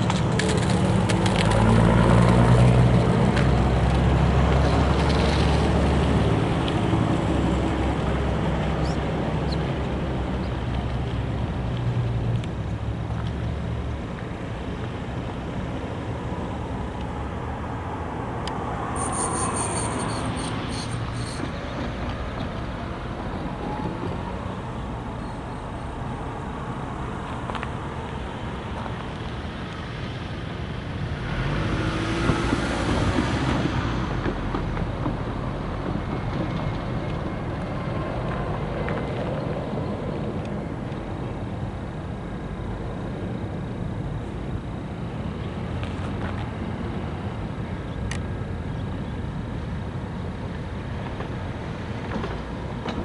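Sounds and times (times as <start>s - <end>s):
low engine rumble: 0.0s - 31.4s
road traffic noise: 0.0s - 53.0s
brief high squeal: 18.9s - 21.5s
vehicle passing: 29.9s - 40.8s.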